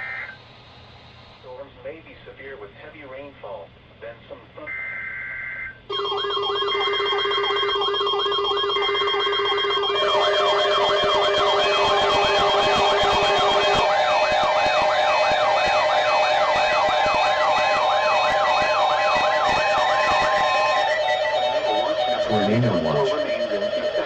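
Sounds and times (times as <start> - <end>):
siren-like warble: 5.9 - 24.0
fast sweeping alert tone: 22.3 - 23.1
steady alert tones: 22.3 - 23.2.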